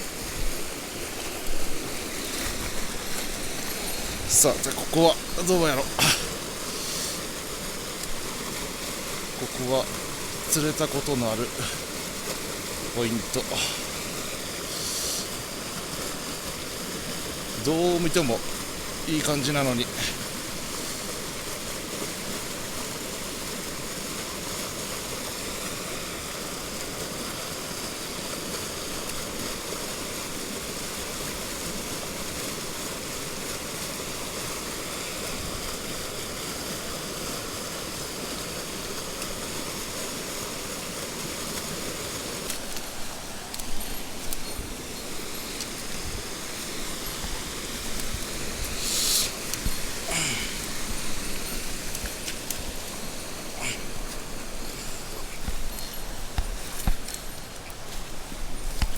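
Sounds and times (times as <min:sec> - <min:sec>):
stream water running: 0:00.0 - 0:58.9
sharp hiss: 0:03.6 - 0:08.1, 0:13.3 - 0:15.6, 0:43.4 - 0:57.4.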